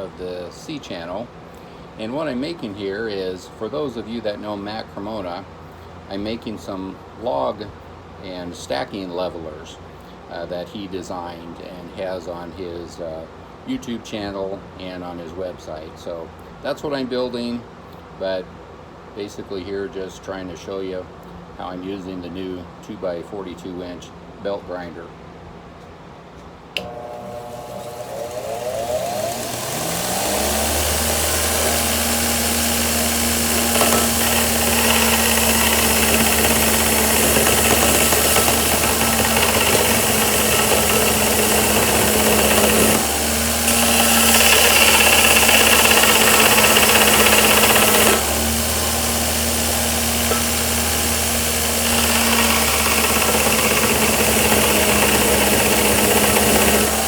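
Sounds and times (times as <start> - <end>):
grinder motor whine and hum: 26.8 - 57.0
metal grinding against belt: 26.9 - 57.0.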